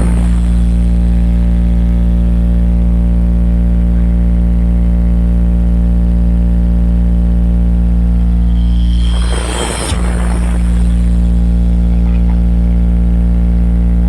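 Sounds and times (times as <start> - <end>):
deep bass tone: 0.0 - 14.0.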